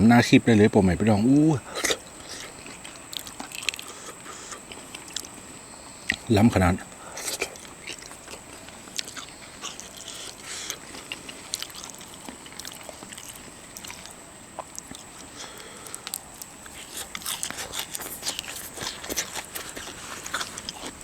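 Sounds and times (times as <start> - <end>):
person chewing food: 1.6 - 21.0.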